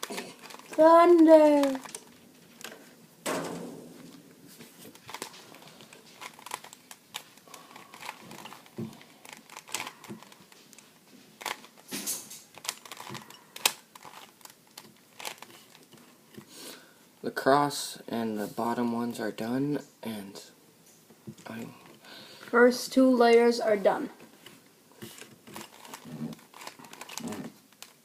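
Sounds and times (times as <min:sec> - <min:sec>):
plastic puzzle cube clicking: 0:06.2 - 0:10.4, 0:12.5 - 0:16.0, 0:25.2 - 0:28.0.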